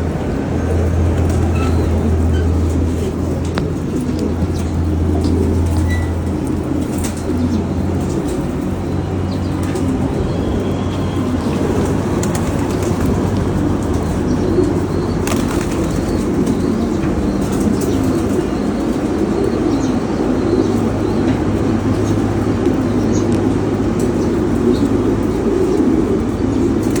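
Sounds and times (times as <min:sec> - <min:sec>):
pigeons cooing: 0:00.0 - 0:27.0
pigeons wings flapping: 0:00.0 - 0:27.0.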